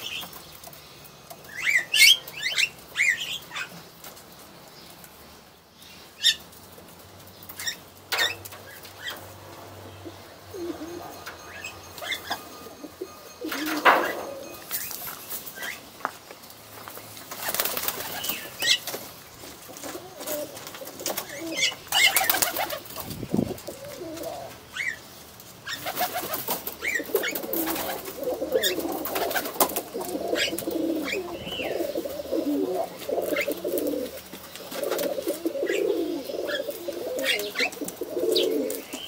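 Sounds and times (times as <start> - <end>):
pigeons cooing: 7.6 - 15.8, 19.6 - 39.0.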